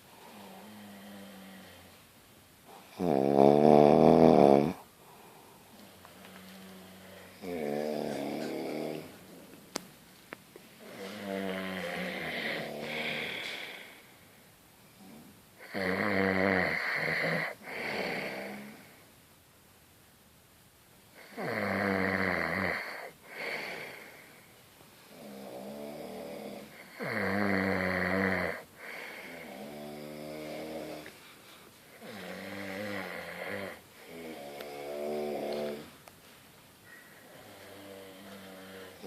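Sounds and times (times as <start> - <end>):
person snoring: 0.2 - 1.9, 2.7 - 4.9, 6.4 - 9.2, 10.8 - 14.2, 15.0 - 18.9, 21.2 - 24.4, 25.1 - 31.2, 32.0 - 35.9, 37.2 - 39.0.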